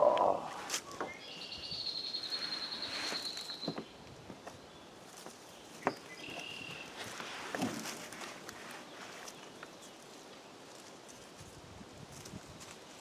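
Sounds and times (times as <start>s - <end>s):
songbird trilling: 0.0s - 3.8s.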